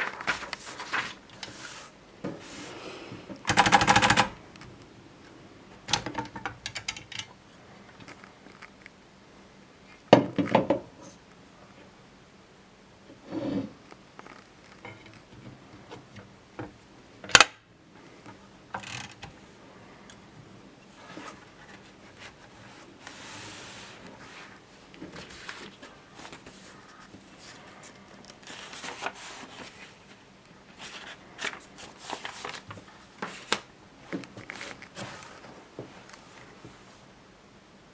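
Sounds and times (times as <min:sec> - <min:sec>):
typewriter clicks and knocks: 0:03.4 - 0:04.7, 0:05.8 - 0:07.3, 0:18.8 - 0:19.4
sharp typewriter strike: 0:03.5 - 0:04.4.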